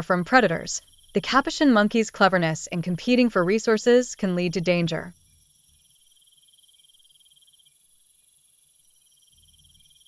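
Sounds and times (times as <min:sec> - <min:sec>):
insects chirring: 0:00.0 - 0:10.0.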